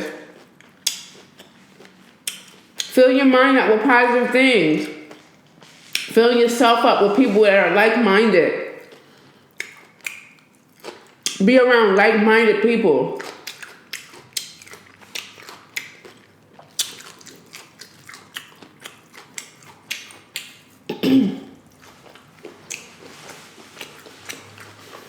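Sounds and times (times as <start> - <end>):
chewing crunchy tortilla chips: 0.0 - 2.9, 8.8 - 11.4, 13.1 - 20.9, 21.6 - 25.0.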